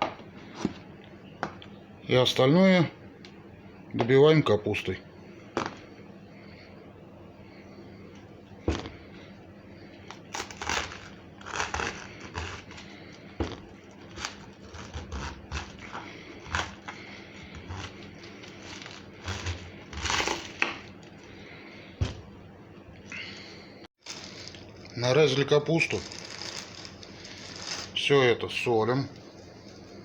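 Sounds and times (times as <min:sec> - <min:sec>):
knife cutting cabbage: 0:10.1 - 0:20.9.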